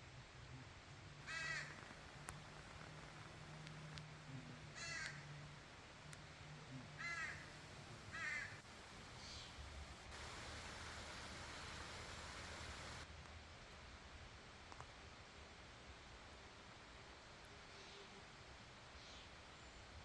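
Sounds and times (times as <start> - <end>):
faint outdoor hiss: 0.0 - 20.0
bird calling: 1.2 - 13.0.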